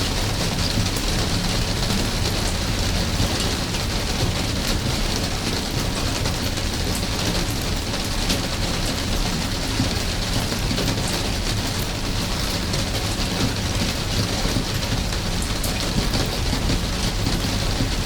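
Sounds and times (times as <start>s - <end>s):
steady rain falling: 0.0s - 18.0s.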